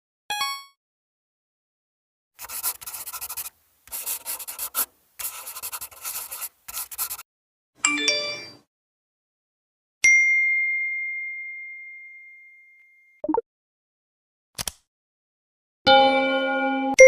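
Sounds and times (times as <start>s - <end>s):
scratchy rubbing strokes: 2.4s - 7.2s.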